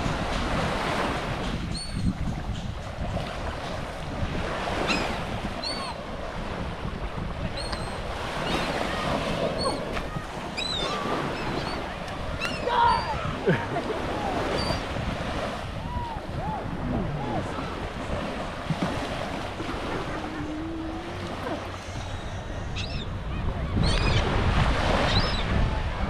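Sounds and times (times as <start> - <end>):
beach surf: 0.0 - 26.0
wind buffeting microphone: 0.0 - 26.0
seabirds calling: 0.8 - 25.5.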